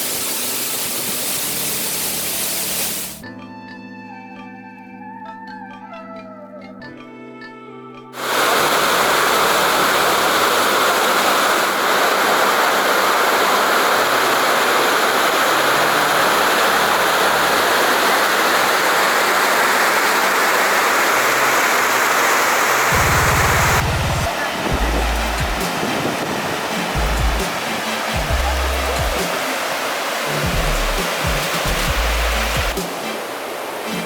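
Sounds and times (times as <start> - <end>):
waterfall roaring: 0.0 - 3.2, 8.2 - 34.0
organ-like music: 22.9 - 34.0.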